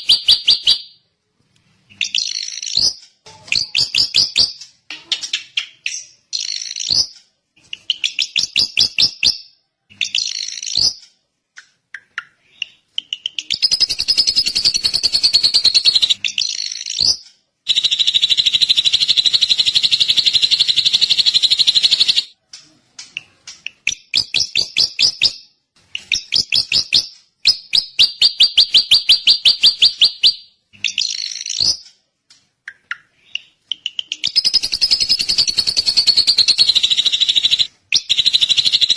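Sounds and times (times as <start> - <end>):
bird chattering and trilling: 32.7 - 38.9.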